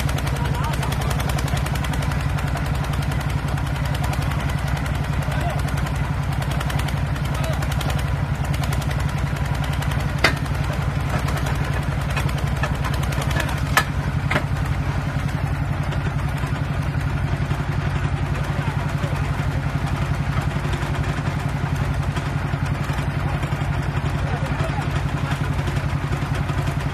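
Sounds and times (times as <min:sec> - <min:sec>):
tractor engine running under load: 0:00.0 - 0:26.9
sharp metallic clanks: 0:10.2 - 0:14.5.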